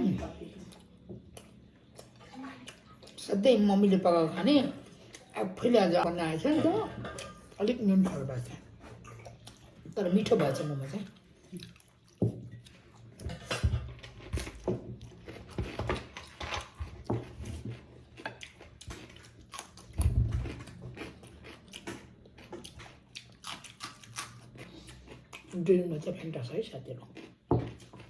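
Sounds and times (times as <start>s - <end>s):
person chewing food: 0.4s - 3.2s, 8.8s - 10.0s, 11.2s - 25.6s, 27.0s - 28.0s.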